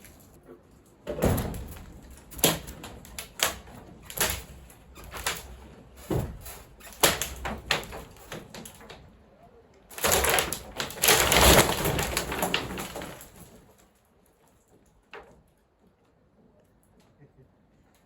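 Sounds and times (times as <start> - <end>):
wood crunching and clattering: 0.0 - 9.2, 9.9 - 15.5
wooden structure knocks and cracks: 0.0 - 9.3, 9.9 - 14.0.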